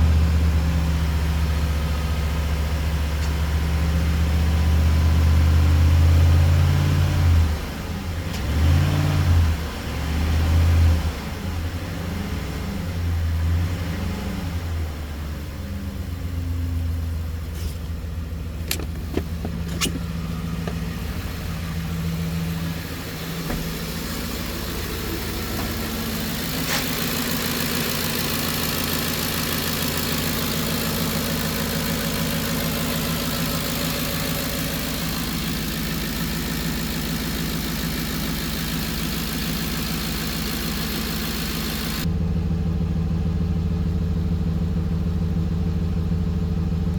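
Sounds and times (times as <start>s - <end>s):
engine running unevenly then idling: 14.7s - 46.9s.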